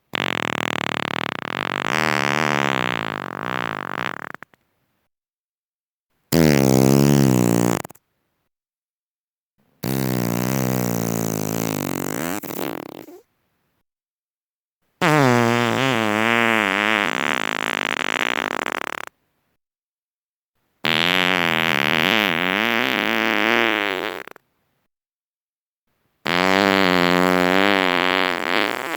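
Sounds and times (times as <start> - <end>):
long farts: 0.0 - 4.6, 6.3 - 8.0, 9.8 - 13.3, 15.0 - 19.2, 20.8 - 24.4, 26.2 - 28.9.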